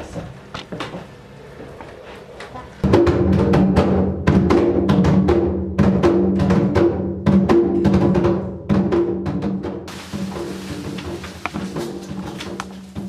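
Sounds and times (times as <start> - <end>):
hand drum struck in fast rhythm: 2.8 - 13.0.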